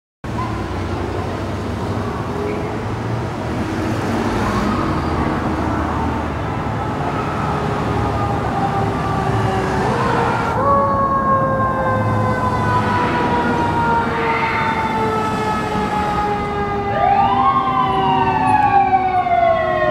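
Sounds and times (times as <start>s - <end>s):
engine and road noise: 0.2s - 19.9s
emergency siren wailing: 4.1s - 19.9s.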